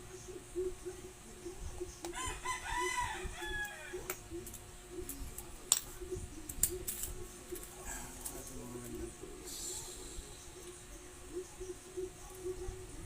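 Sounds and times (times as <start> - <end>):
rooster crowing: 2.1 - 4.1.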